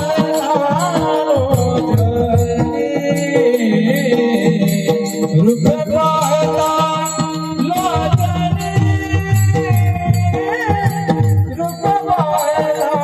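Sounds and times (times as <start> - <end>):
drum strokes: 0.0 - 13.0.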